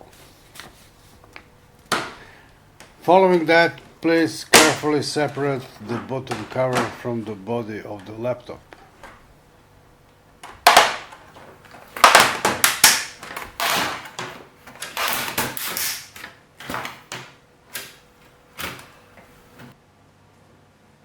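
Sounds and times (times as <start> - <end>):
plastic scraping: 0.0 - 9.3, 10.4 - 17.3
plastic clips clicking: 10.4 - 18.0.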